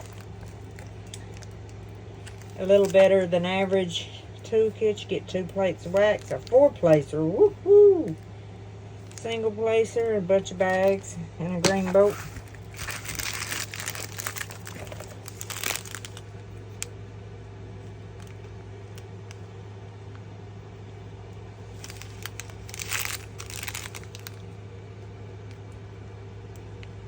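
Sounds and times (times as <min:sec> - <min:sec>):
plastic packaging crinkling: 0:00.0 - 0:03.9, 0:05.6 - 0:07.1, 0:09.0 - 0:09.4, 0:10.6 - 0:17.0, 0:21.6 - 0:24.5
steady low hum: 0:00.0 - 0:27.0.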